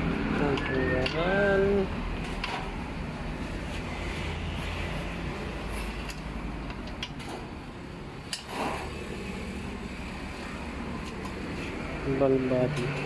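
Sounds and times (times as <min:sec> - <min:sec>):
short scrape: 0:08.4 - 0:09.1.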